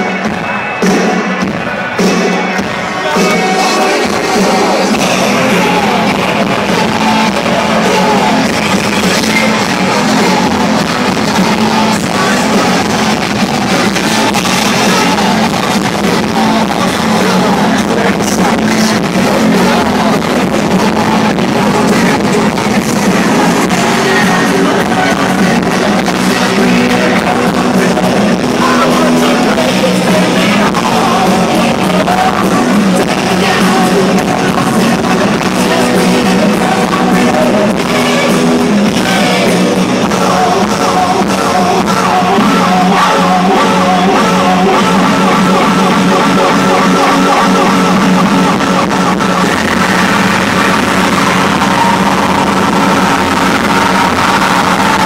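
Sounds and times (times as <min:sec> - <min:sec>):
hardcore techno music: 0:00.0 - 0:55.0.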